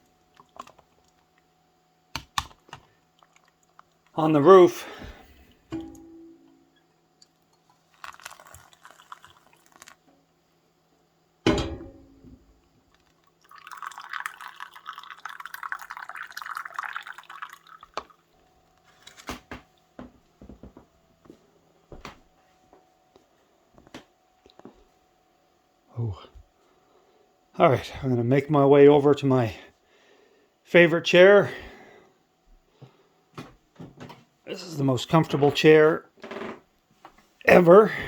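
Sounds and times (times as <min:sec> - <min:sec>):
liquid pouring into container: 0:07.6 - 0:10.0, 0:12.9 - 0:18.3.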